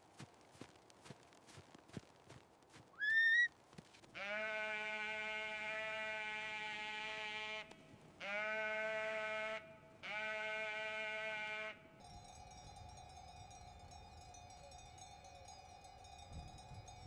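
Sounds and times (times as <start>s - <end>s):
sheep bleating: 4.2s - 11.8s.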